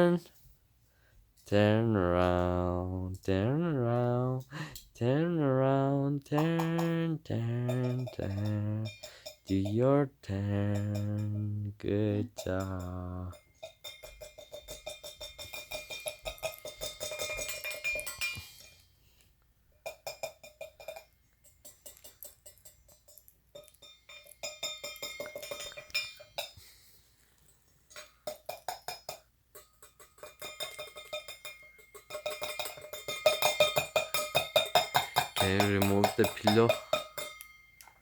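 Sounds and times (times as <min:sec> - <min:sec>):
rapid metallic clinking: 0:06.4 - 0:09.8, 0:10.5 - 0:11.6, 0:12.4 - 0:18.8, 0:19.8 - 0:26.8, 0:27.9 - 0:38.0.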